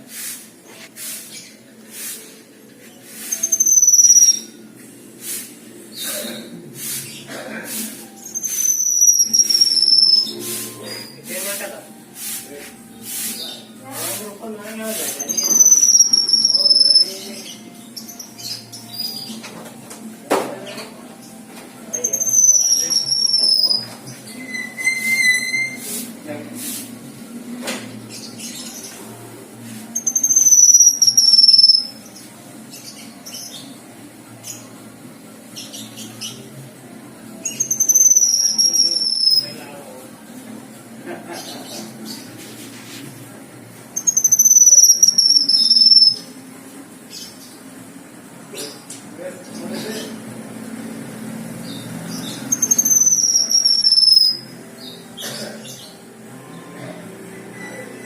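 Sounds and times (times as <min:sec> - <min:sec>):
bird whistling: 0:03.2 - 0:04.6, 0:08.3 - 0:11.2, 0:15.3 - 0:17.1, 0:22.0 - 0:25.9, 0:30.0 - 0:31.9, 0:37.5 - 0:39.5, 0:44.0 - 0:46.2, 0:52.5 - 0:54.5
bird chattering notes: 0:08.3 - 0:11.2, 0:15.1 - 0:19.2, 0:22.0 - 0:23.8, 0:30.0 - 0:32.0, 0:37.5 - 0:39.5, 0:44.0 - 0:46.2, 0:52.2 - 0:54.4
songbird high whistle: 0:08.4 - 0:10.3, 0:44.1 - 0:46.2, 0:52.6 - 0:54.4.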